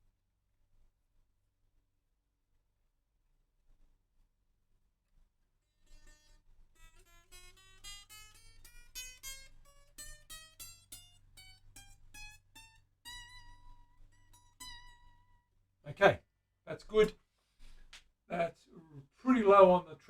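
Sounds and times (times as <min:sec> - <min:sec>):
guitar notes plucked softly: 0:05.9 - 0:15.4.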